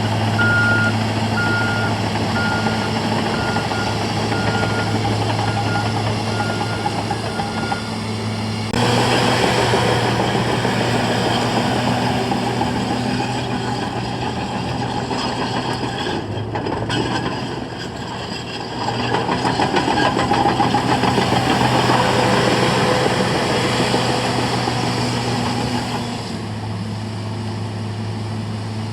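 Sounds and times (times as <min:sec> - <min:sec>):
diesel engine revving: 0:00.0 - 0:28.9
reversing alarm beeping: 0:00.3 - 0:08.2.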